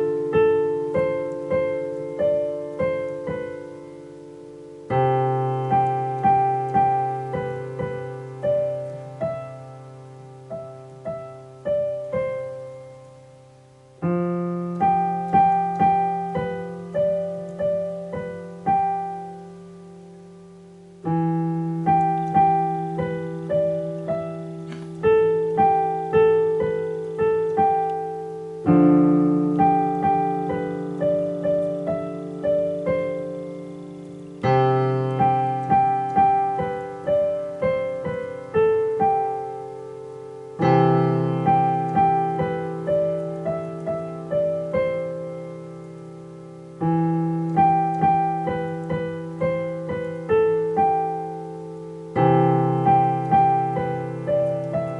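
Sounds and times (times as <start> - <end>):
slow piano melody: 0.0 - 54.9.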